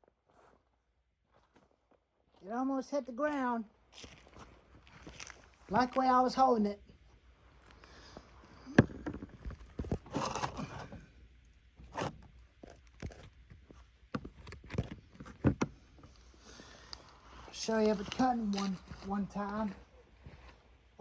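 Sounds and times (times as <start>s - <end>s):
footsteps: 3.9s - 6.1s.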